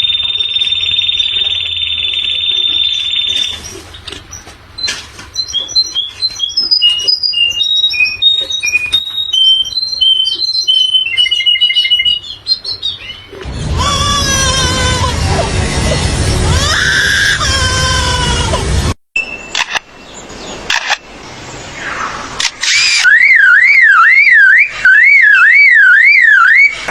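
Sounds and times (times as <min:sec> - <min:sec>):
bird trilling and whistling: 0:00.0 - 0:18.0.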